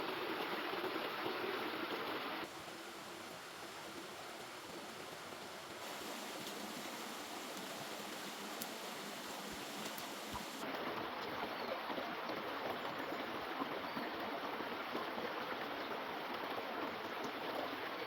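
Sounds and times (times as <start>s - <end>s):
river water rushing: 5.8s - 11.2s.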